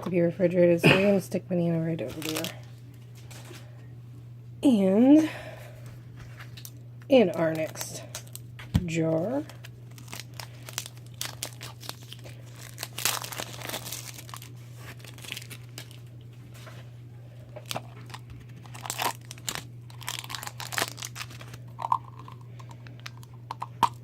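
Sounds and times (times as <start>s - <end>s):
low electrical hum: 0.0s - 24.0s
plastic packaging crinkling: 2.0s - 3.6s, 6.4s - 24.0s.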